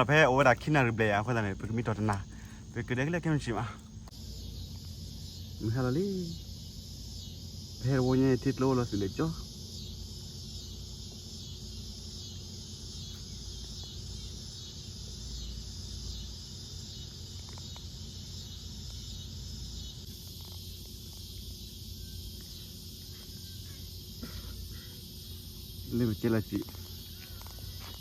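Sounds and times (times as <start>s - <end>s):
insects chirping: 0.0s - 28.0s.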